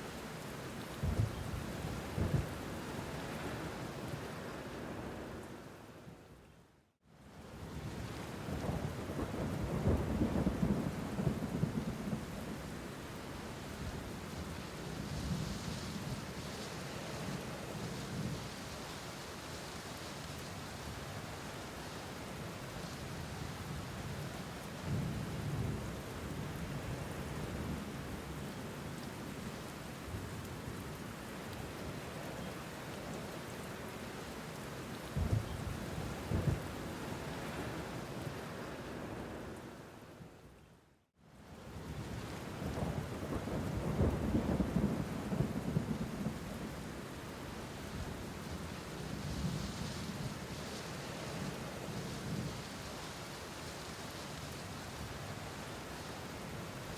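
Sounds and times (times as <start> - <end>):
steady rain: 0.0 - 56.9
low roll of thunder: 8.5 - 12.6, 35.2 - 36.8, 42.0 - 47.0.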